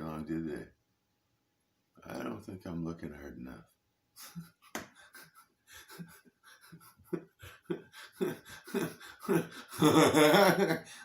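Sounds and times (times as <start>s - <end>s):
person breathing hard: 4.2s - 11.0s
person groaning: 8.1s - 10.4s.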